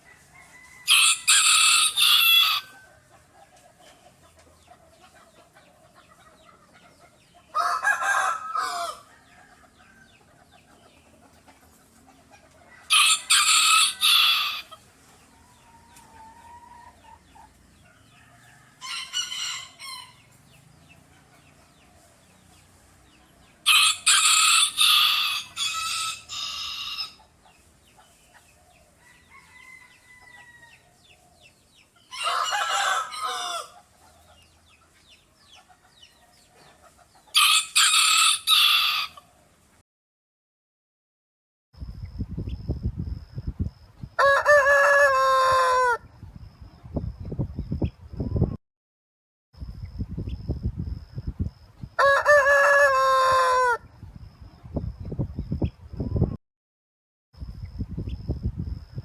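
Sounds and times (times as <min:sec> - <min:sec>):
rooster crowing: 0:00.0 - 0:03.1, 0:07.5 - 0:10.1, 0:12.6 - 0:14.8, 0:18.0 - 0:20.3, 0:23.6 - 0:27.2, 0:29.0 - 0:31.0, 0:32.1 - 0:33.8, 0:37.3 - 0:39.3, 0:44.2 - 0:46.0, 0:52.0 - 0:53.8.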